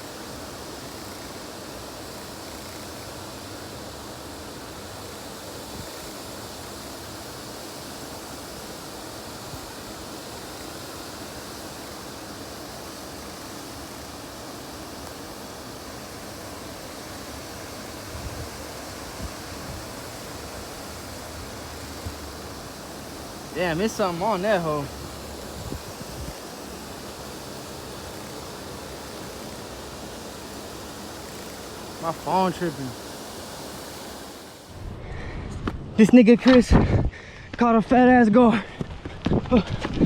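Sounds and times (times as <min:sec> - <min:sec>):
steady hiss of water: 0:00.0 - 0:35.2.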